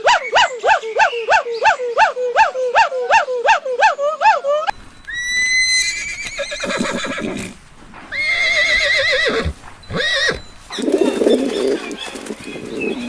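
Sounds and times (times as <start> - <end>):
horse whinnying: 5.3 - 12.1.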